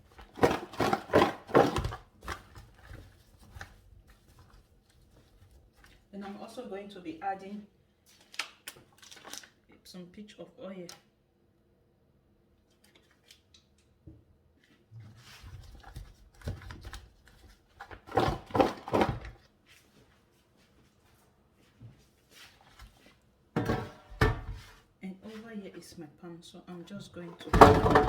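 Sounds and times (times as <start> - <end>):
food rustling and scraping in bowl: 0.0 - 6.7, 14.6 - 25.6.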